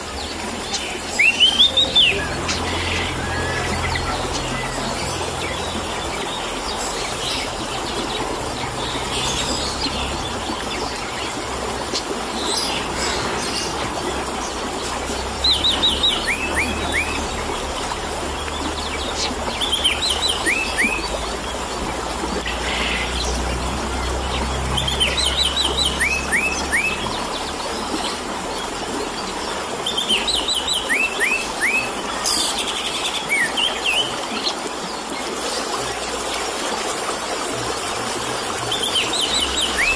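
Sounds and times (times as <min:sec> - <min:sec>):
thrush singing whistled notes: 0:00.0 - 0:21.8, 0:22.4 - 0:28.8, 0:38.6 - 0:39.9
trickling water hiss: 0:00.0 - 0:39.9.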